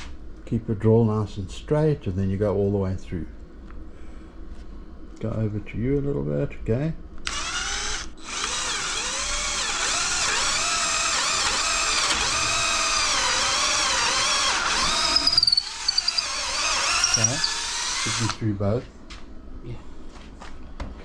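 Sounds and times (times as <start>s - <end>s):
electric drill boring through wood: 7.2s - 18.4s.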